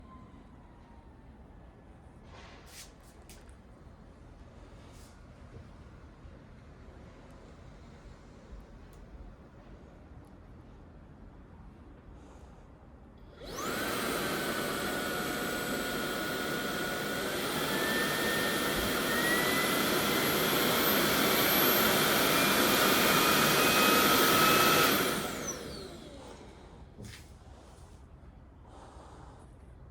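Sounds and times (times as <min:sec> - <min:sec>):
vacuum cleaner motor whine: 0:13.3 - 0:27.2.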